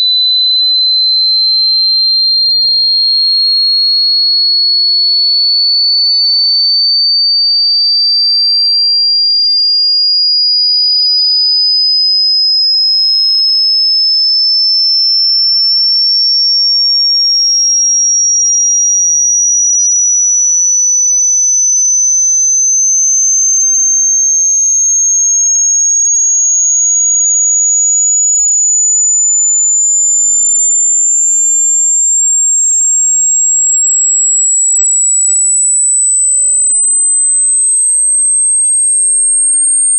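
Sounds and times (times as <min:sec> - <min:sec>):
rising high sine tone: 0:00.0 - 0:39.9.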